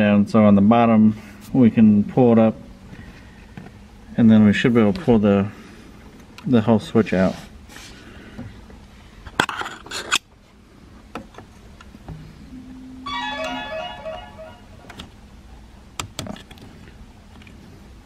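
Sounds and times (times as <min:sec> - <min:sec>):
short electronic jingle: 0:12.4 - 0:15.1.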